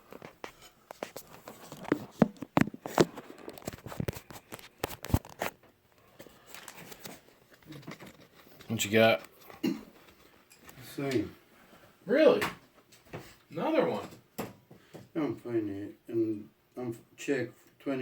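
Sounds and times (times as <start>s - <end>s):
small parts clicking and rustling: 0.1s - 10.8s.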